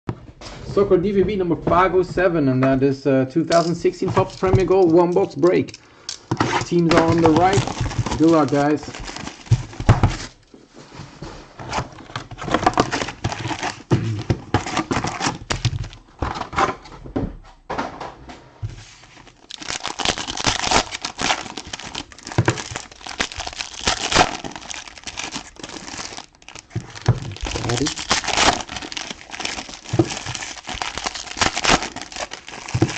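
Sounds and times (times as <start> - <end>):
plastic wrapping crinkling and tearing: 3.6 - 5.8, 6.4 - 10.5, 11.7 - 16.0, 19.1 - 32.9.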